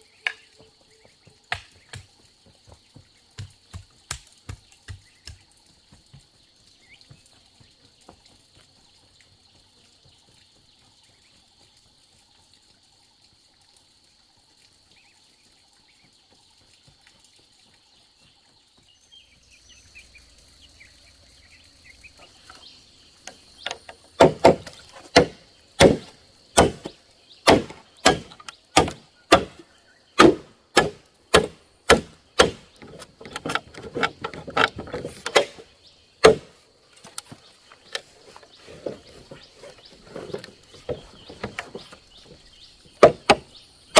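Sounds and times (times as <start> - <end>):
chopping blows on wood: 24.2 - 29.6, 30.2 - 32.7, 35.2 - 35.6, 36.2 - 36.5.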